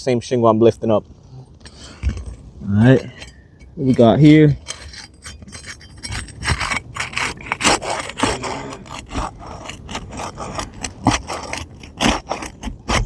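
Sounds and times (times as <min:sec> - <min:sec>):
roofing shingles being scraped: 0:04.6 - 0:13.0.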